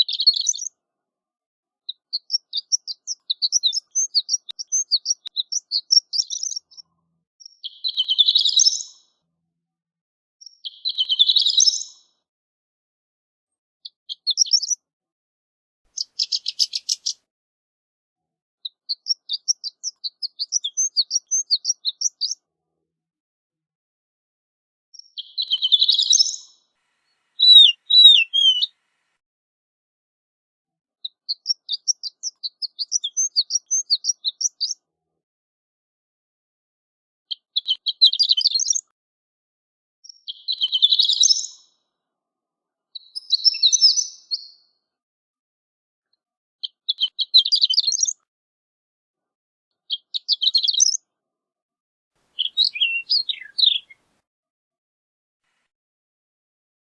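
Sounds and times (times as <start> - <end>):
lark twittering song: 0.0 - 0.7, 1.9 - 9.0, 10.4 - 12.0, 14.1 - 14.8, 15.9 - 17.2, 18.7 - 22.4, 25.0 - 28.8, 31.2 - 34.8, 37.3 - 38.8, 40.1 - 41.7, 43.0 - 44.7, 46.6 - 48.2, 49.9 - 51.0, 52.3 - 54.0.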